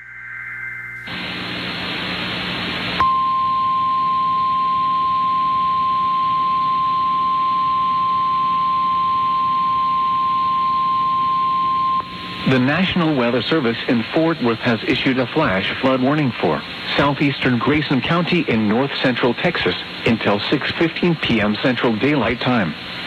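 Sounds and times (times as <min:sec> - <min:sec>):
data header tones: 0:00.0 - 0:15.2
radio hiss: 0:01.1 - 0:03.0, 0:11.9 - 0:23.0.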